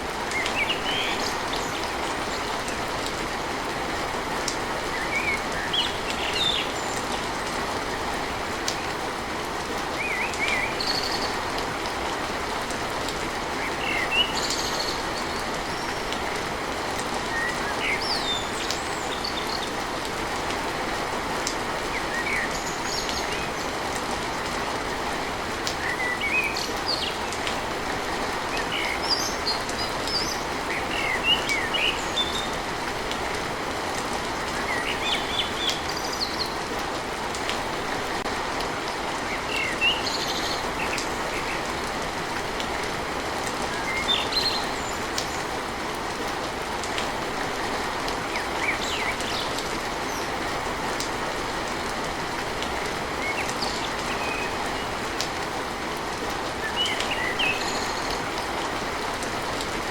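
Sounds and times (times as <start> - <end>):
rain drumming on a tin roof: 0.0 - 59.9
birds chirping: 56.6 - 58.8.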